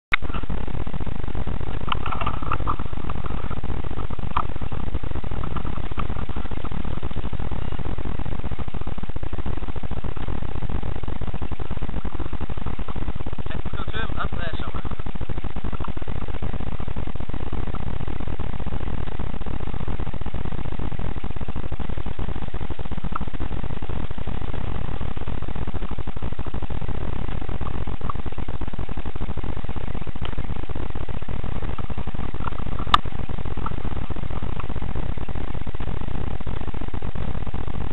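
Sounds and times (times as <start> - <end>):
rough rumbling microphone noise: 0.0 - 37.9.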